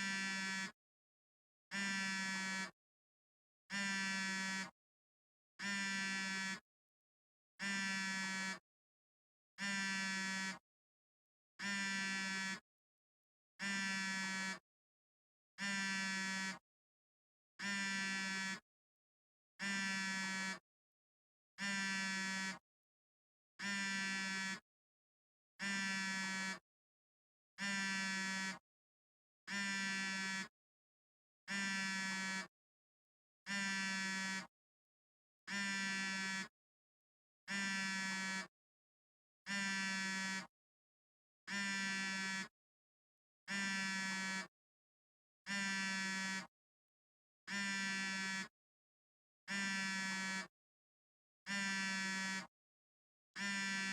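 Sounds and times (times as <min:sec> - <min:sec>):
smartphone vibrating buzz: 0:00.0 - 0:00.8, 0:01.7 - 0:02.8, 0:03.7 - 0:04.8, 0:05.6 - 0:06.6, 0:07.6 - 0:08.6, 0:09.6 - 0:10.6, 0:11.6 - 0:12.6, 0:13.6 - 0:14.6, 0:15.6 - 0:16.6, 0:17.6 - 0:18.6, 0:19.6 - 0:20.6, 0:21.6 - 0:22.6, 0:23.6 - 0:24.6, 0:25.6 - 0:26.6, 0:27.6 - 0:28.6, 0:29.5 - 0:30.6, 0:31.5 - 0:32.5, 0:33.5 - 0:34.5, 0:35.5 - 0:36.5, 0:37.5 - 0:38.5, 0:39.5 - 0:40.5, 0:41.5 - 0:42.6, 0:43.5 - 0:44.5, 0:45.5 - 0:46.5, 0:47.5 - 0:48.5, 0:49.5 - 0:50.5, 0:51.5 - 0:52.5, 0:53.4 - 0:53.9.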